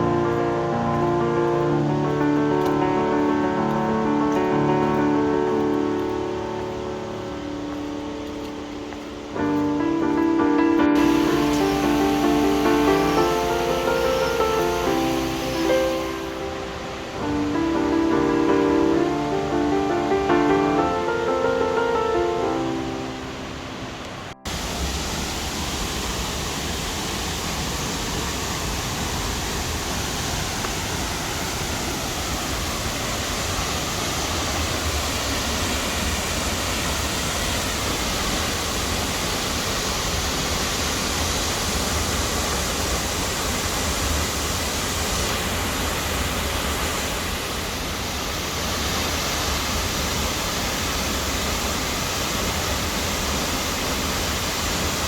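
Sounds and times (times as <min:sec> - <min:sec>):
piano music: 0:00.0 - 0:24.6
waterfall rushing: 0:00.0 - 0:55.0.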